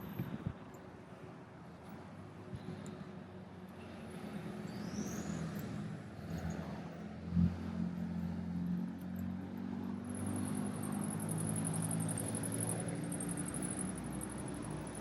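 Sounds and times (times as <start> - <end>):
vehicle engine humming: 6.7 - 15.0.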